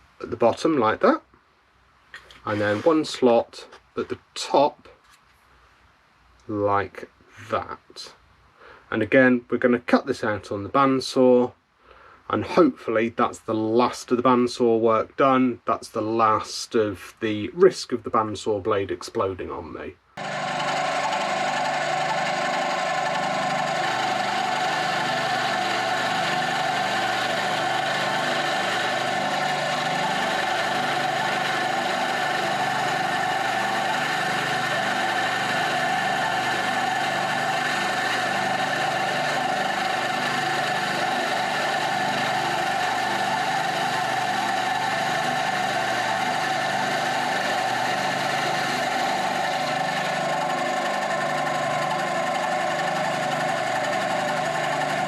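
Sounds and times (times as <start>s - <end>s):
bandsaw running: 2.4s - 3.2s, 20.2s - 55.0s.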